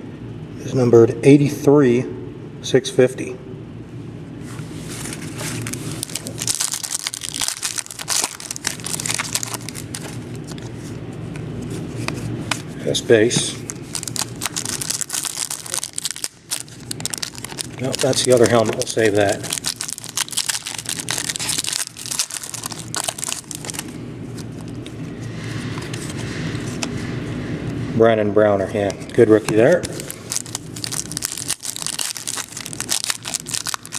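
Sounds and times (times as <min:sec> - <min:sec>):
steady low hum: 0:00.0 - 0:33.9
plastic packaging crinkling: 0:05.0 - 0:10.7, 0:13.6 - 0:25.0, 0:29.7 - 0:33.9.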